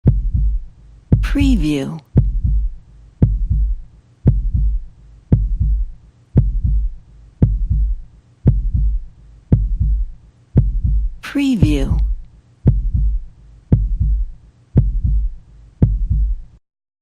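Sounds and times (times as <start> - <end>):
heartbeat thumps: 0.0 - 16.5.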